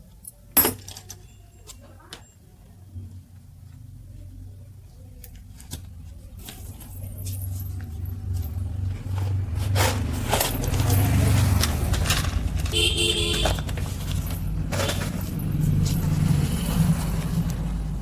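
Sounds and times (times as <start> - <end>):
engine rumbling and rattling: 5.3 - 18.0.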